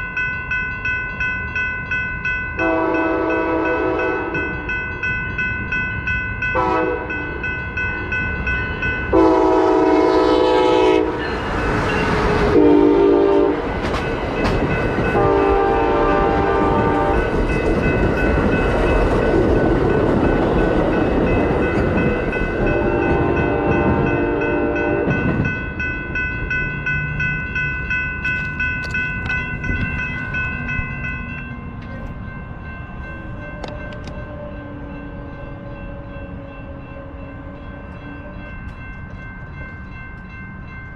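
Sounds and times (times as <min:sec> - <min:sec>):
train rumble and wheel clatter: 0:00.0 - 0:40.9
locomotive air horn blasts: 0:02.6 - 0:04.6, 0:06.6 - 0:07.3, 0:09.1 - 0:11.4, 0:12.5 - 0:13.6, 0:15.2 - 0:17.2, 0:22.6 - 0:25.3.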